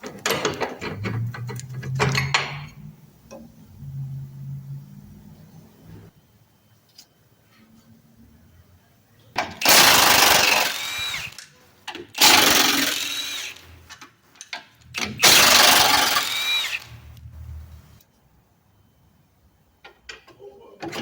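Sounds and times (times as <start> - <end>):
impact wrench bursts: 9.4 - 11.4, 12.1 - 13.8, 14.8 - 17.2.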